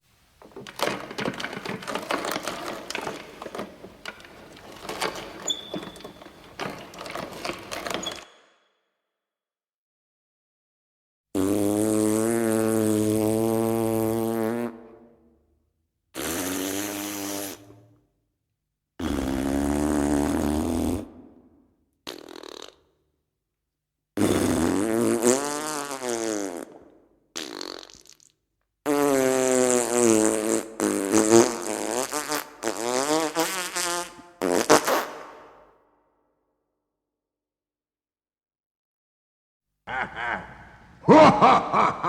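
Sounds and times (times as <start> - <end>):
fart sound effects: 0.5 - 8.2, 11.4 - 15.0, 16.2 - 17.8, 19.0 - 21.4, 22.1 - 23.0, 24.2 - 28.3, 28.9 - 35.6.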